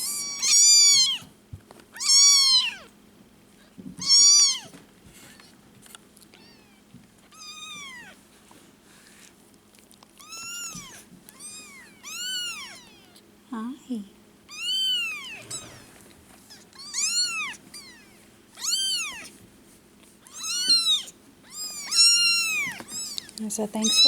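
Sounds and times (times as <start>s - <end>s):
kittens meowing: 0.0s - 1.3s, 1.9s - 3.0s, 3.7s - 5.4s, 6.3s - 8.2s, 10.2s - 13.2s, 14.5s - 19.4s, 20.2s - 24.0s
faint steady hum: 0.0s - 24.0s.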